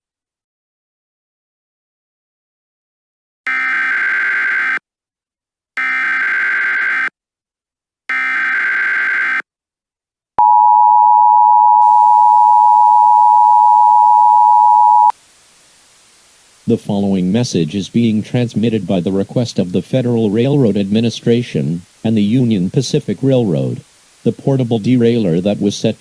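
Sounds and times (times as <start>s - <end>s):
digital data tones: 10.4s - 15.1s
two-tone attention signal: 10.4s - 15.1s
faint hiss: 15.1s - 26.0s.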